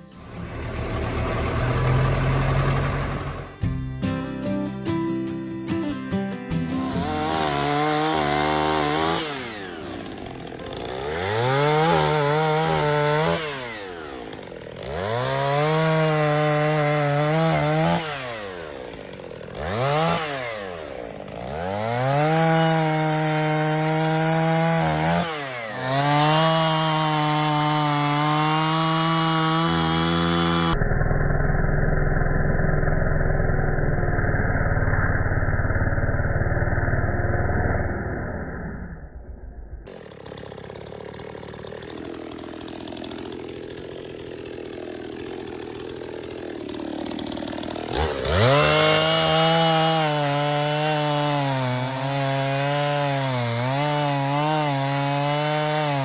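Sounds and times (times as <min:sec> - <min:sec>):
chainsaw cutting wood: 0:00.0 - 0:04.4, 0:06.5 - 0:30.8, 0:39.9 - 0:56.0.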